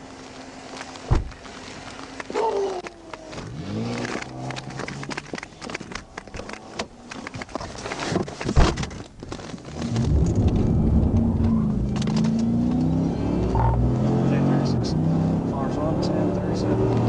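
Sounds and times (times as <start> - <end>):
loud thump: 1.1 - 1.3
car engine revving hard: 9.8 - 17.0.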